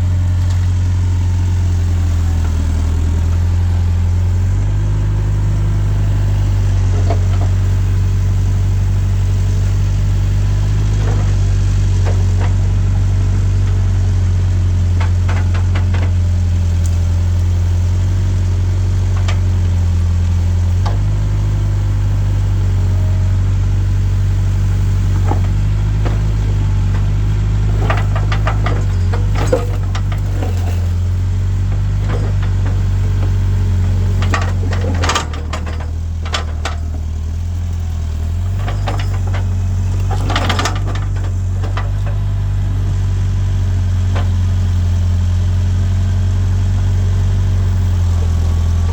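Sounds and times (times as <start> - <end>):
diesel engine running: 0.0 - 48.9
sharp clicks and knocks: 25.2 - 31.0, 31.6 - 37.0.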